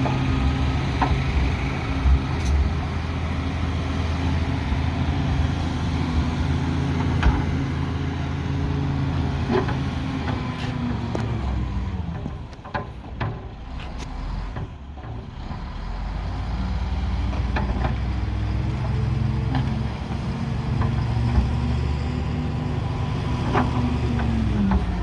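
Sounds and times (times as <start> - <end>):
diesel engine droning under load: 0.0 - 25.0.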